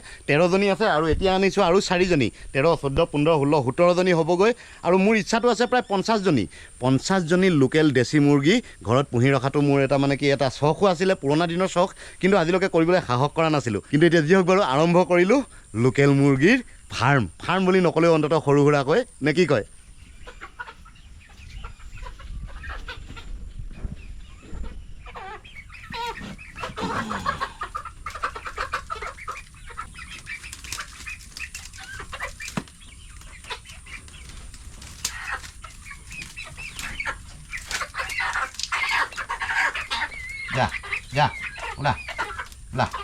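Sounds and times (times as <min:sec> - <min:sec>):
hens clucking and squawking: 0:17.5 - 0:43.0
wings flapping and scuffling: 0:20.0 - 0:43.0.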